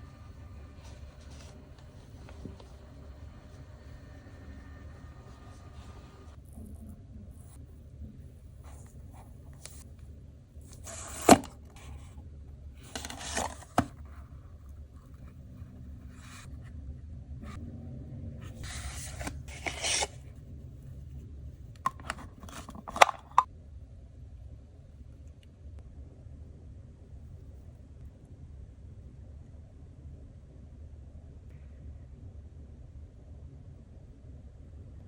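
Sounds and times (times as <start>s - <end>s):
packaging scraping: 10.7s - 12.0s, 12.8s - 14.1s, 18.5s - 20.2s, 21.9s - 23.5s.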